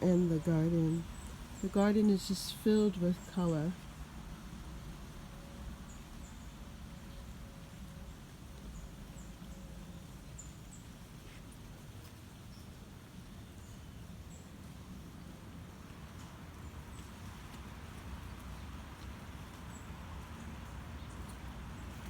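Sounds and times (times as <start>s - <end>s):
small birds chirping: 0.0s - 4.1s, 5.9s - 14.6s, 19.4s - 22.0s
low steady rumble: 0.0s - 11.2s.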